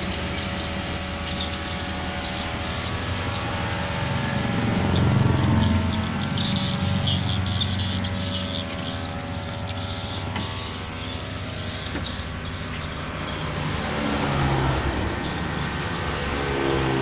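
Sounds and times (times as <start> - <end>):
engine running: 0.0 - 17.0
high chirping: 0.0 - 17.0.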